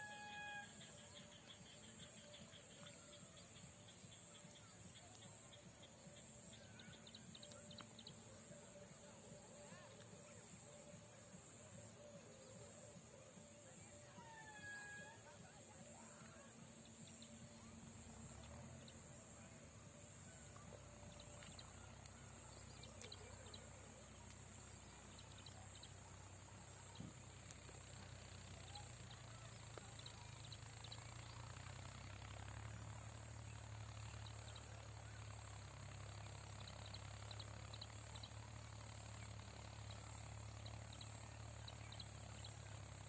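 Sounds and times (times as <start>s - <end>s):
low steady hum: 0.0s - 43.0s
insects chirring: 0.1s - 43.0s
tiny ticks: 7.3s - 8.1s, 20.6s - 23.3s.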